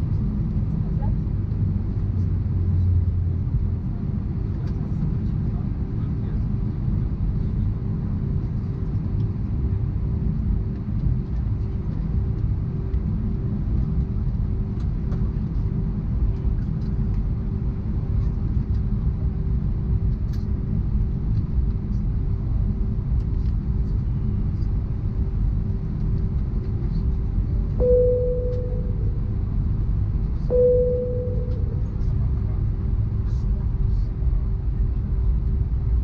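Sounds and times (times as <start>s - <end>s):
airplane cabin rumble: 0.0s - 36.0s
faint steady hum: 27.7s - 34.1s
cabin chime ding: 27.8s - 29.0s, 30.5s - 31.8s.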